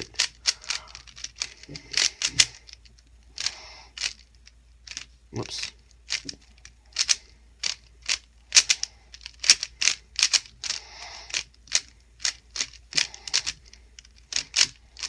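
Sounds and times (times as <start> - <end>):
plastic puzzle cube clacking: 0.0 - 15.0.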